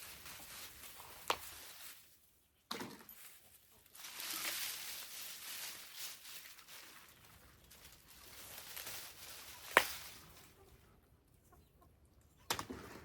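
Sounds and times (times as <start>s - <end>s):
rustling of vines and leaves: 0.0s - 11.8s
sharp crack: 9.6s - 10.2s.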